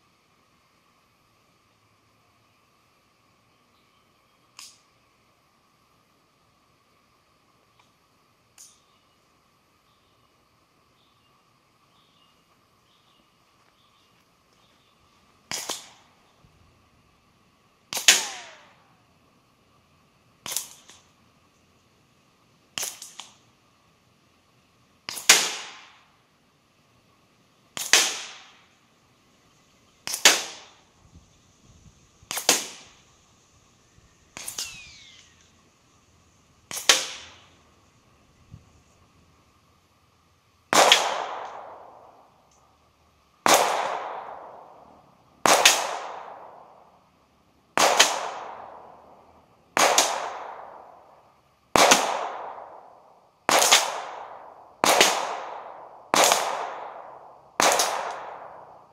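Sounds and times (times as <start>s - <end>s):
distant pistol shots with echo: 40.7s - 42.1s, 43.4s - 44.8s, 45.4s - 46.8s, 47.8s - 49.0s, 49.8s - 51.0s, 51.8s - 52.8s, 53.5s - 58.8s.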